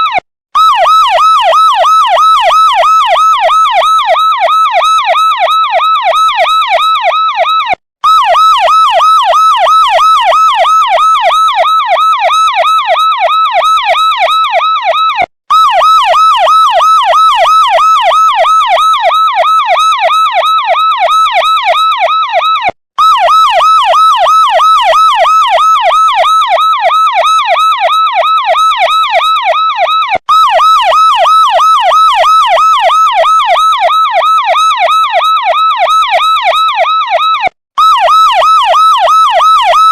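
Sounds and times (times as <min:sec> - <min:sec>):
electronic police siren warbling: 0:00.0 - 0:39.9.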